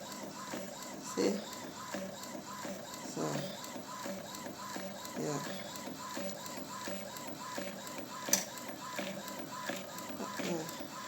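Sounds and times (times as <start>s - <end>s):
printer carriage moving back and forth: 0.0s - 11.0s
sharp click: 8.3s - 8.5s.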